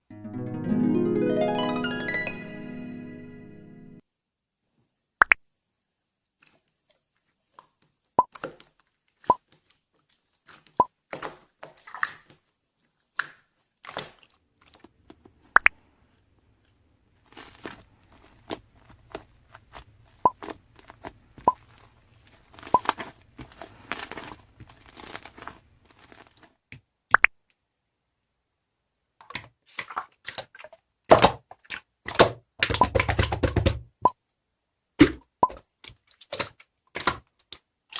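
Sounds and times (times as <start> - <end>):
slime squished by hand: 10.2 - 14.9.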